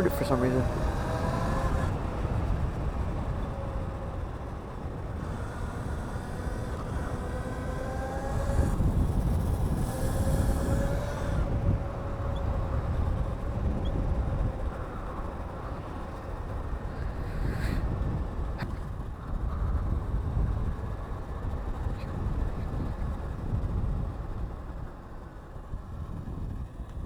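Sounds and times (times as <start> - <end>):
electric motor whine: 0.0 - 18.6
wind rumbling on microphone: 0.0 - 27.0.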